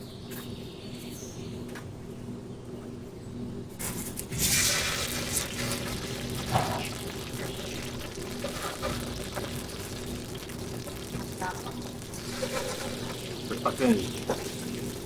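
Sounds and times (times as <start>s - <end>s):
water pouring: 4.3s - 15.0s.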